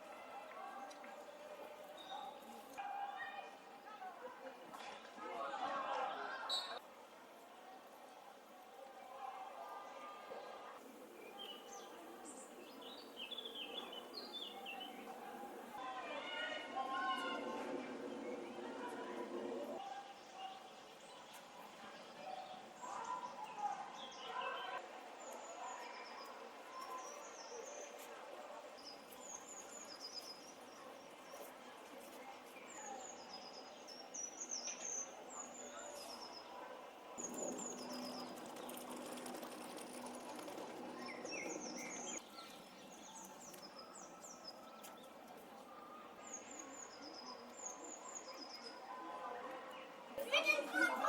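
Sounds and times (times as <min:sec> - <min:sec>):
low background murmur: 0:00.0 - 0:51.0
songbird chirping: 0:11.0 - 0:15.8.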